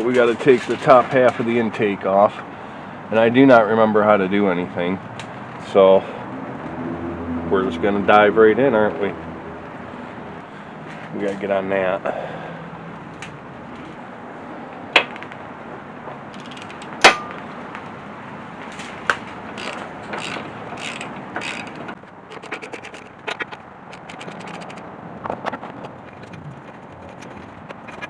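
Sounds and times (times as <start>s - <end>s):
quick tool clicking: 16.4s - 17.4s, 19.5s - 24.8s
sharp metal clanks: 16.4s - 17.5s.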